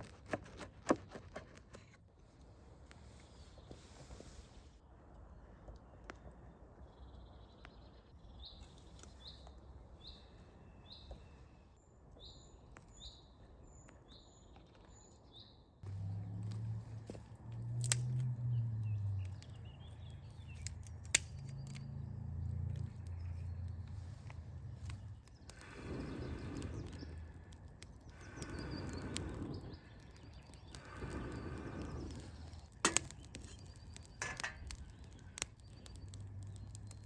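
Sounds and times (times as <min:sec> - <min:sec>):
songbird chirping: 0:05.8 - 0:37.0
sharp clicks: 0:17.6 - 0:37.0.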